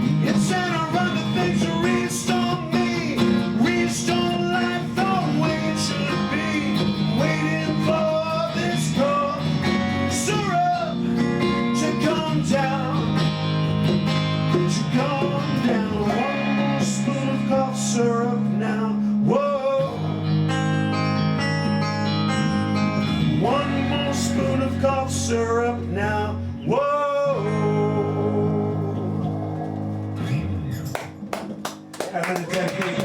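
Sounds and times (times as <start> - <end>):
rock band playing: 0.0 - 19.0, 20.0 - 26.0.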